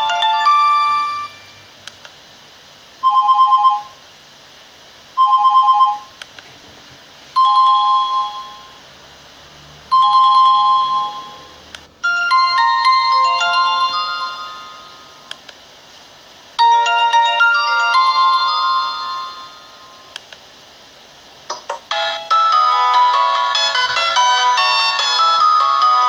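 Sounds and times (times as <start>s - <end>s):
phone ringtone melody: 0.0s - 1.6s, 3.0s - 4.0s, 5.2s - 6.1s, 7.4s - 8.8s, 9.9s - 15.2s, 16.6s - 19.9s, 21.9s - 26.0s.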